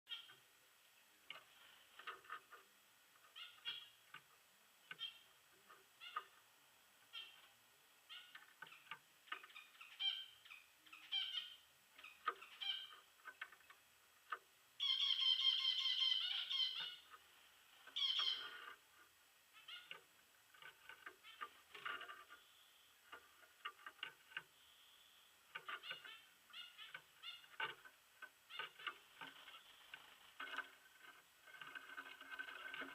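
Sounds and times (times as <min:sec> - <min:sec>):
finches chirping: 0:00.1 - 0:00.4, 0:01.3 - 0:32.9
finch song: 0:00.1 - 0:32.9.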